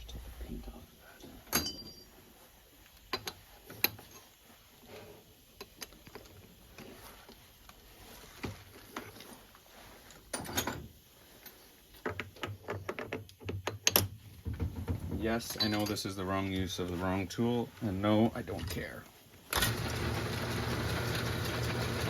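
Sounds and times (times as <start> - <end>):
metal tools clicking and clattering: 1.5 - 2.1.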